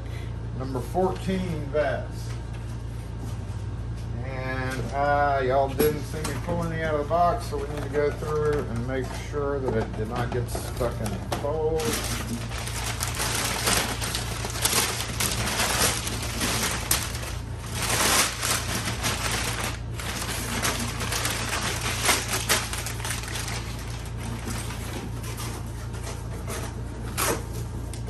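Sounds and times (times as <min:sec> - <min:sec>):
paper rustling and crackling: 0:06.2 - 0:28.0.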